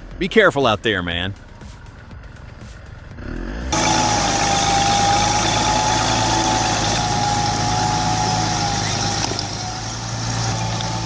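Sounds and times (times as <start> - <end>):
engine running steadily: 0.0 - 11.0
high whine: 3.7 - 11.0.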